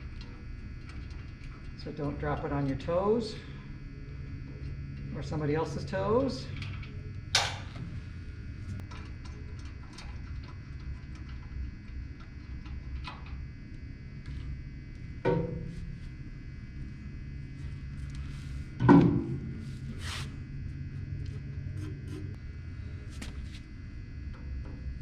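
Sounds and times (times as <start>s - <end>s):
steady low hum: 0.0s - 25.0s
metal table thud with ring: 15.3s - 15.8s.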